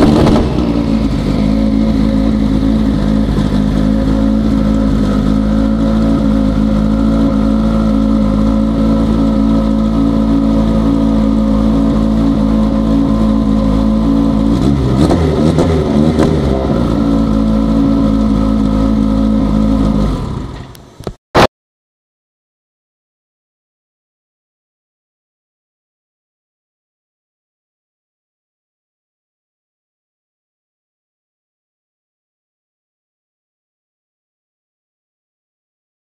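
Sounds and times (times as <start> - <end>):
race car engine idling: 0.0 - 21.1
engine revving with crackles: 0.0 - 21.5.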